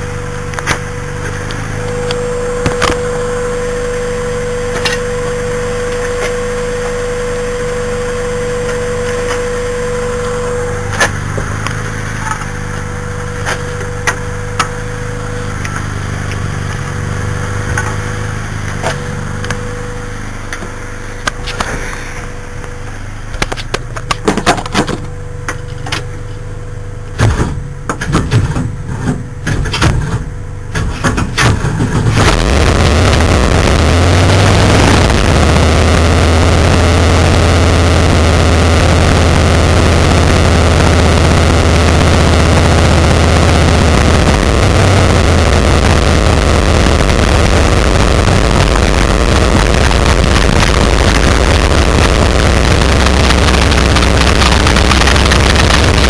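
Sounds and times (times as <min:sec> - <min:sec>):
car engine running: 0:00.0 - 0:56.0
sharp engine knocks: 0:27.2 - 0:32.3.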